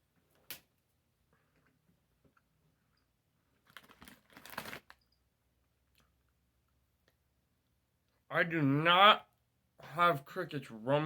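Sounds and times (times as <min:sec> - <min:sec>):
plastic crinkling: 0:03.5 - 0:05.0.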